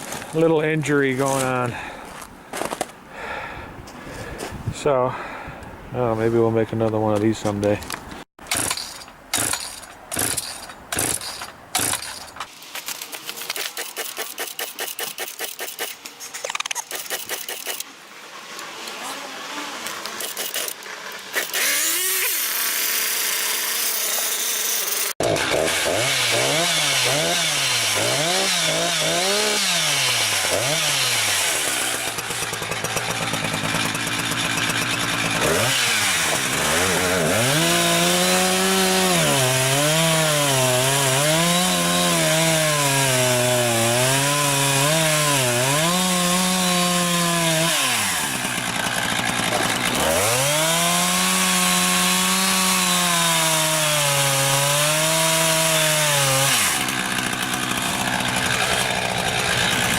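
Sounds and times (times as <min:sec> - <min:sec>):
chainsaw revving: 0:08.4 - 0:12.3, 0:16.8 - 0:17.9, 0:19.5 - 0:59.9.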